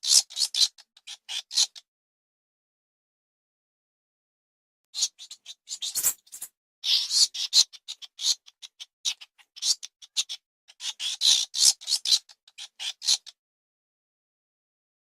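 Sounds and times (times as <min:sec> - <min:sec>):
rat squeaking: 0:00.0 - 0:01.9, 0:05.0 - 0:13.4.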